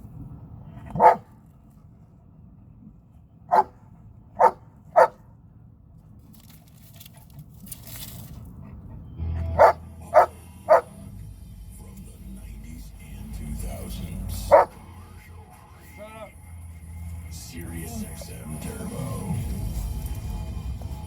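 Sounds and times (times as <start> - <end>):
dog barking: 0.9 - 1.3, 3.5 - 5.2, 9.6 - 11.0, 14.4 - 14.8.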